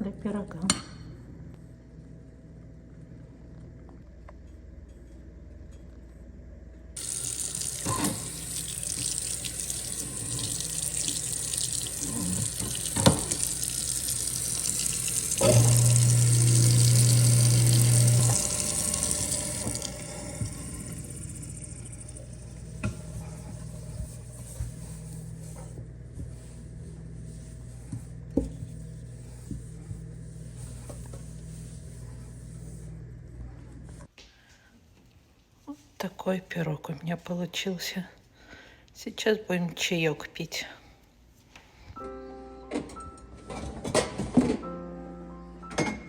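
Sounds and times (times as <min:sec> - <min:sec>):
tap water running into sink: 0:07.0 - 0:24.2.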